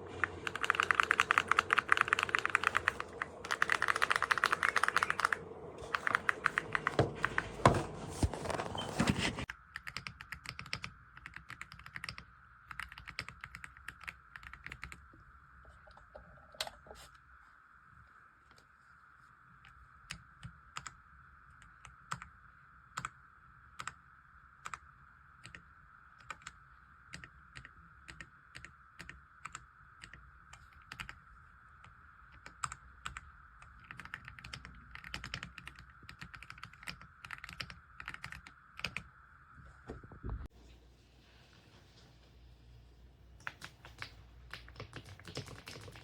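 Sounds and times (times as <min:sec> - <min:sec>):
mechanical keyboard typing: 0:00.0 - 0:07.7, 0:09.8 - 0:15.0, 0:30.8 - 0:31.2, 0:32.4 - 0:39.0, 0:43.5 - 0:46.0.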